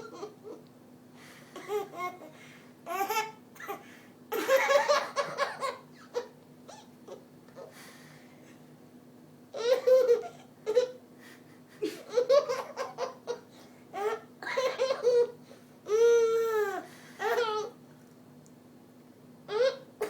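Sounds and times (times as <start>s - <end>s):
young child laughing: 1.5s - 7.8s, 9.6s - 15.4s.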